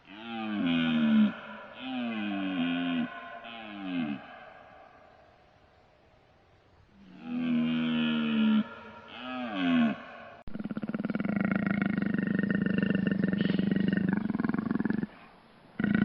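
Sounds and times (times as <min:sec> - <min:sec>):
low drawn-out animal call: 0:00.0 - 0:05.4, 0:07.0 - 0:16.0
big cat roaring: 0:00.1 - 0:04.5, 0:07.1 - 0:15.1
gliding animal call: 0:07.0 - 0:15.2.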